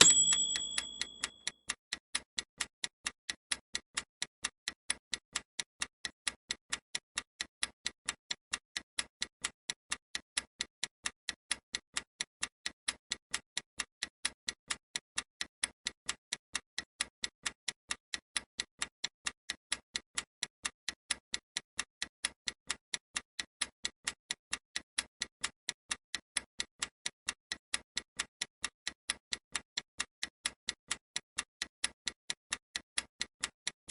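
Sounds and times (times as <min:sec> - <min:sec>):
clock ticking: 0:00.0 - 0:01.5.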